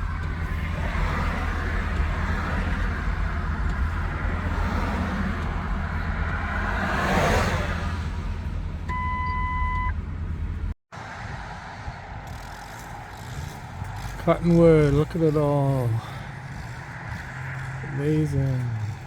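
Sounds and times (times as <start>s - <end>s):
low road rumble: 0.0s - 19.0s
vehicle passing: 0.0s - 19.0s
electronic beep: 8.9s - 10.0s.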